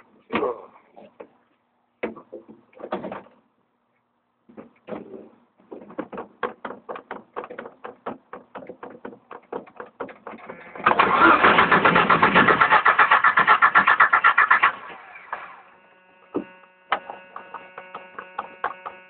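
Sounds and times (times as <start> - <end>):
car engine cranking on starter: 10.4 - 15.6.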